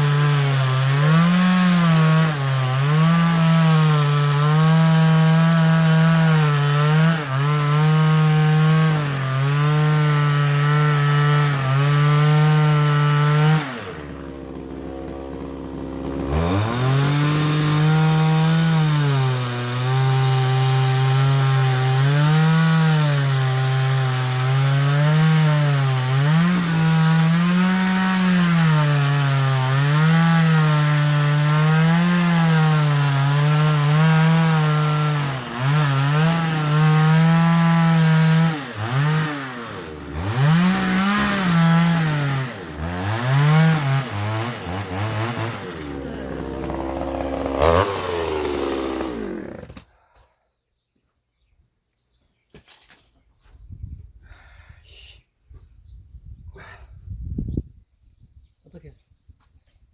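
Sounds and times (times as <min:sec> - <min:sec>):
chainsaw cutting wood: 0:00.0 - 0:50.0.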